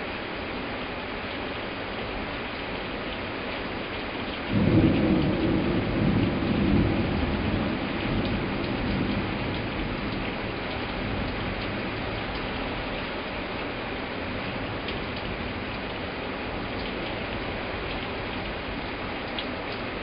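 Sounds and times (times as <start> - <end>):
heavy rain falling: 0.0 - 20.0
thunderclap rumbling: 4.5 - 12.2.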